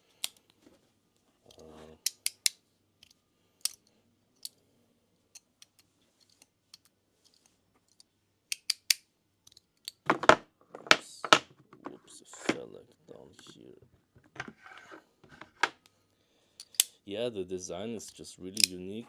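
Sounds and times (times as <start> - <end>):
piece falling with knocks: 9.9 - 12.6.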